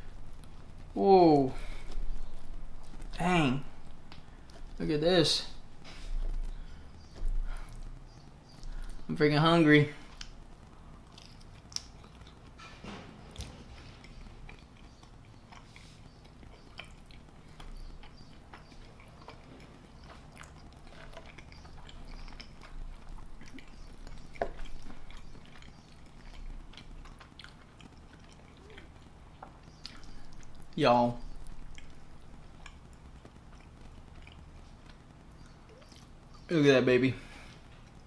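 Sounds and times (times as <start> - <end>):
person chewing food: 0.0 - 4.8, 5.4 - 9.1, 9.9 - 36.5, 37.4 - 38.0
mouth clicks: 20.0 - 36.5.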